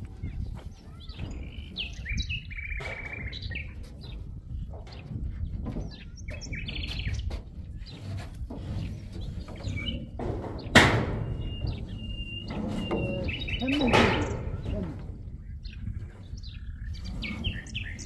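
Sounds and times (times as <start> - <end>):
low rumble: 0.0 - 18.0
small birds chirping: 0.0 - 18.0.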